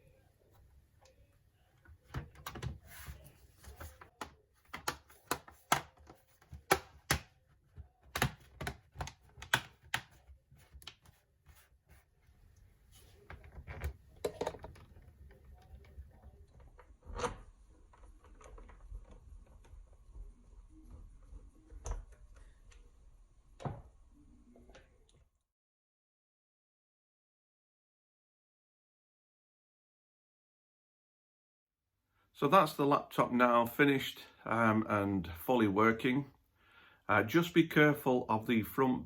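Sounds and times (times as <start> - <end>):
soft handling noises: 0.0 - 22.9
sharp plastic clicks and taps: 4.2 - 10.2.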